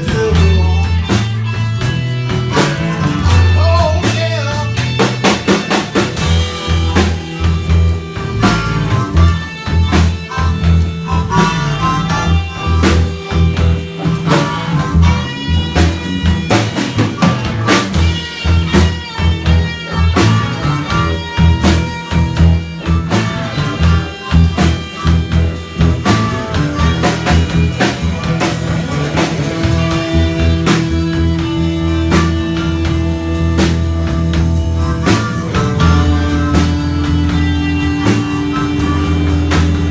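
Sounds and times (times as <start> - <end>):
bass line: 0.0 - 39.9
drum kit beat: 0.0 - 39.9
lead instrument wavering notes: 6.2 - 33.6.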